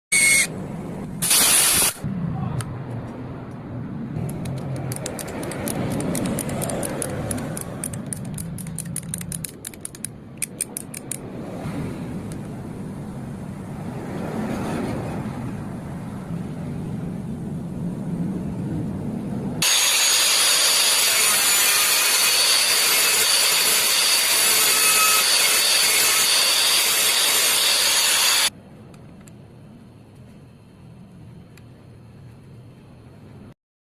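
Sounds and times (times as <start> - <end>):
ratchet clicking rapidly: 4.4 - 11.2, 19.6 - 28.5
workshop tool rushing noise: 19.6 - 28.5.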